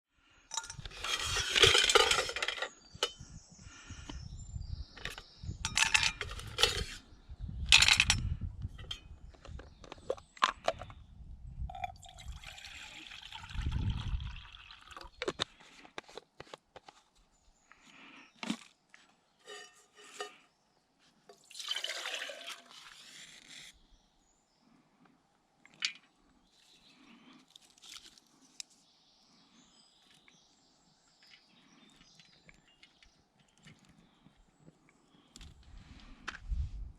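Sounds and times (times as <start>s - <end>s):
metal camp gear clinking: 0.5s - 3.3s, 5.0s - 7.0s, 7.7s - 10.9s, 19.4s - 20.5s
water pouring and splashing: 11.9s - 15.2s, 21.4s - 23.4s.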